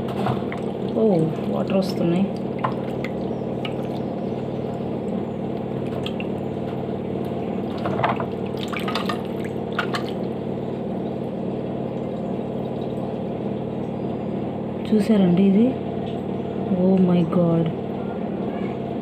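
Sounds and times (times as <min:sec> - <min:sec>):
small splashes and knocks: 0:02.3 - 0:04.2, 0:05.7 - 0:10.3
water running out: 0:07.2 - 0:10.3.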